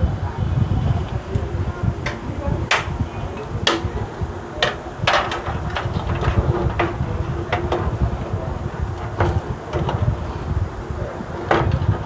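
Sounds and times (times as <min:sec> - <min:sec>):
hard parts knocking and clicking: 0:01.3 - 0:10.2, 0:11.3 - 0:12.0.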